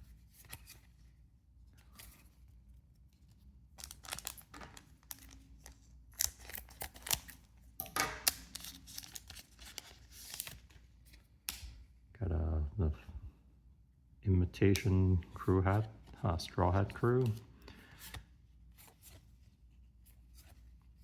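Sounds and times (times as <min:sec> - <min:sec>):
foil pack crinkling and tearing: 0:03.8 - 0:07.4, 0:08.2 - 0:10.6.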